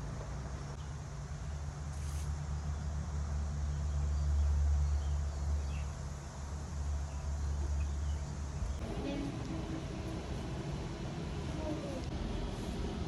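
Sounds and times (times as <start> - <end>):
steady low hum: 0.0 - 13.0.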